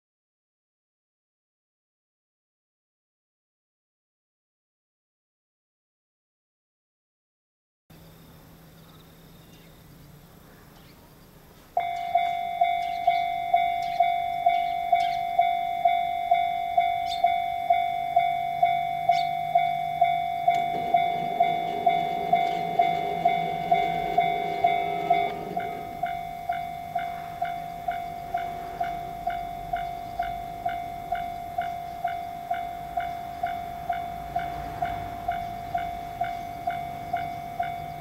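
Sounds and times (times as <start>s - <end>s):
train rumble: 10.0s - 38.0s
level crossing alarm bell: 11.8s - 38.0s.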